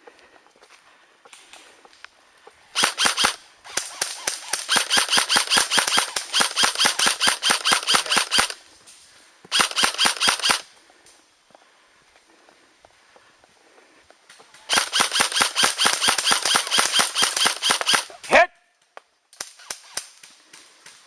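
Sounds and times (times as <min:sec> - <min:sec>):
airsoft gun firing bursts: 0:02.7 - 0:08.6, 0:09.5 - 0:10.7, 0:14.5 - 0:18.2.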